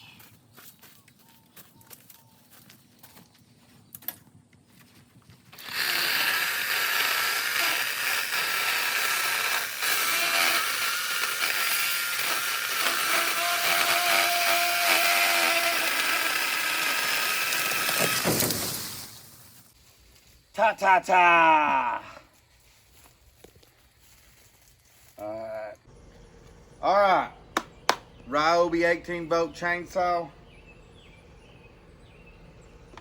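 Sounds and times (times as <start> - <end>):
cordless chainsaw whining: 5.5 - 19.0.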